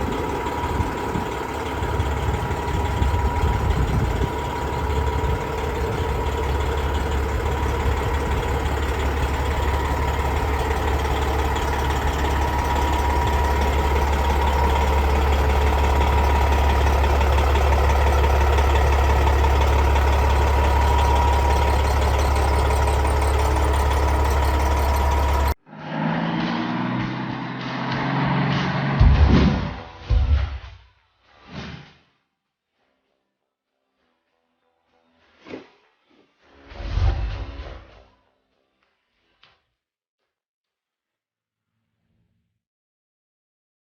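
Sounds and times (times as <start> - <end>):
diesel engine idling: 0.0 - 25.6.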